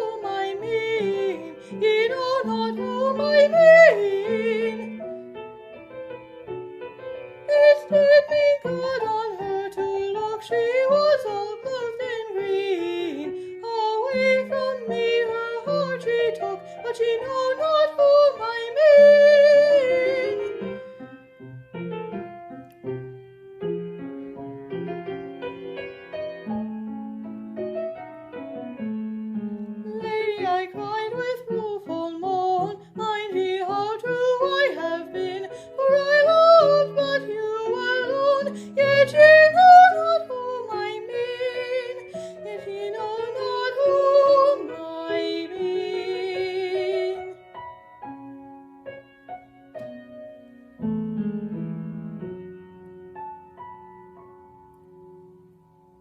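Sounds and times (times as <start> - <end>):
woman singing classical: 0.0 - 5.3, 7.3 - 21.2, 28.7 - 48.2
piano: 0.0 - 56.0.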